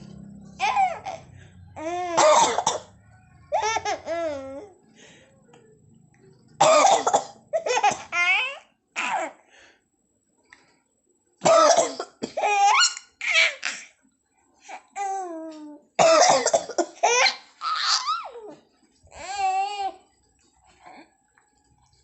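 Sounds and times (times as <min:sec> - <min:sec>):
baby laughing: 0:00.6 - 0:02.3
person coughing: 0:02.2 - 0:02.9, 0:16.0 - 0:17.0.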